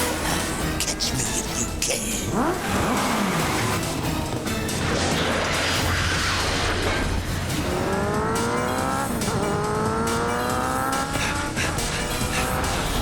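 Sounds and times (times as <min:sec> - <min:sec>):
action music: 0:00.0 - 0:13.0
engine-like whine rising in pitch: 0:04.7 - 0:13.0.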